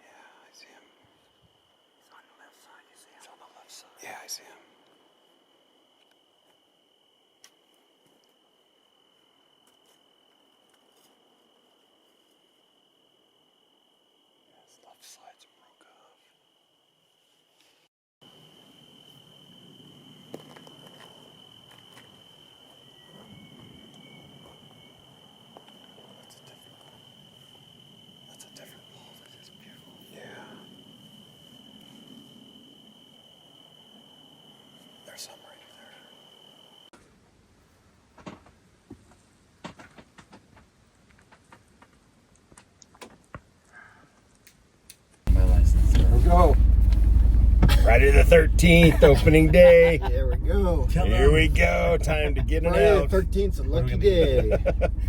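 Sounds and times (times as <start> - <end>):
crickets trilling: 0.0 - 17.4, 18.2 - 37.0, 41.6 - 55.0
faint low rustle: 45.3 - 55.0.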